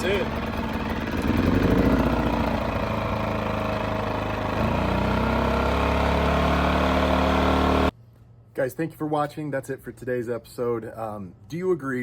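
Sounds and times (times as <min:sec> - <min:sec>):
generator engine running: 0:00.0 - 0:07.9.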